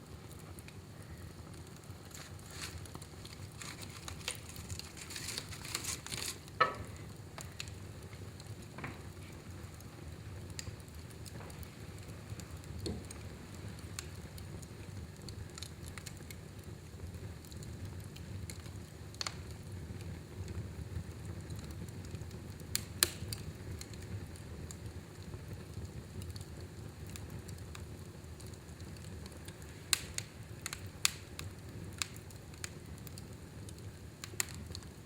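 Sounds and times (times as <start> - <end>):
fire burning in a fireplace: 0.0 - 35.0
fire crackling and hissing: 0.0 - 35.0
loud pop from fire: 4.3 - 7.8, 12.8 - 13.2, 22.7 - 23.5, 29.9 - 31.4.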